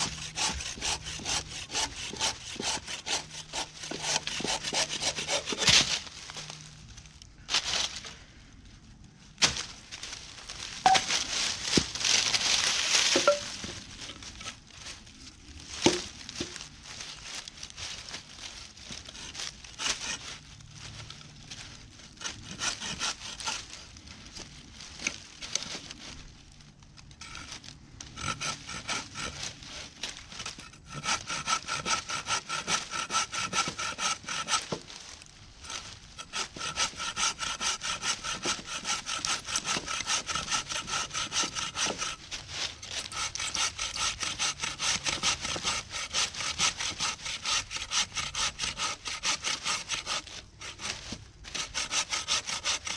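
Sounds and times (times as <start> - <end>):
saw cutting through wood: 0.0 - 6.0, 12.1 - 13.5, 18.9 - 20.4, 21.6 - 23.8, 27.2 - 35.0, 35.6 - 52.9.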